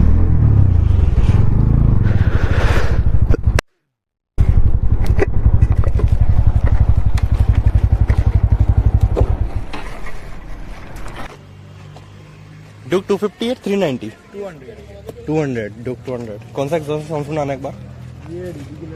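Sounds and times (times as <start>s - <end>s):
motorcycle engine idling: 4.4s - 10.6s.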